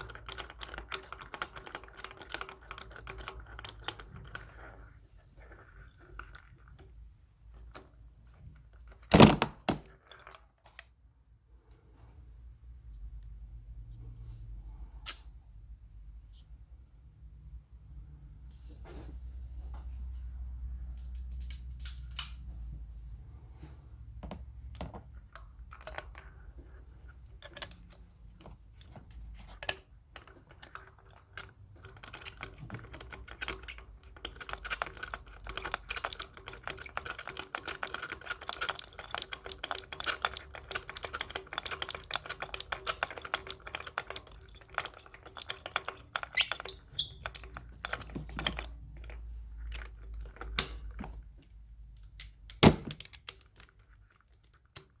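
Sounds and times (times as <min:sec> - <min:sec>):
tools knocking and clicking: 0:36.0 - 0:51.2.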